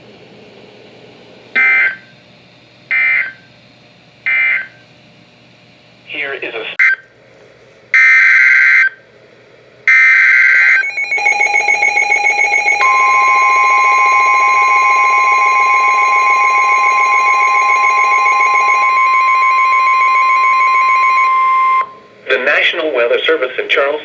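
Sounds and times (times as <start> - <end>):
steady warning alarm tone: 1.6 - 2.2, 2.9 - 3.5, 4.2 - 4.8, 8.0 - 9.0, 9.9 - 22.2
harsh digital data bursts: 10.3 - 21.4
pulsing alert tone: 10.8 - 21.9.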